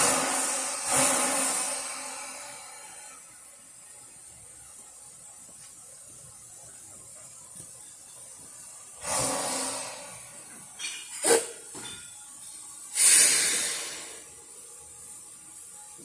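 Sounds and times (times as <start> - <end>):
steam hiss: 0.0 - 3.9, 8.3 - 12.0, 12.7 - 16.0.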